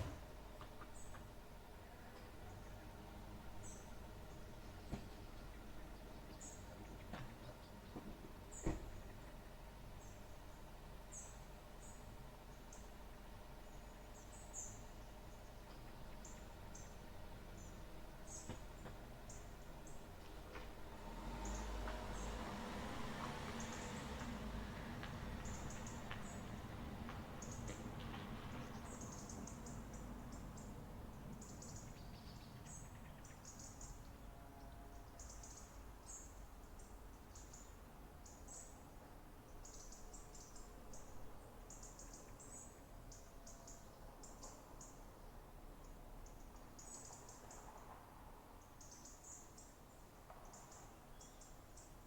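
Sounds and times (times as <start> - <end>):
small birds chirping: 28.5 - 34.2.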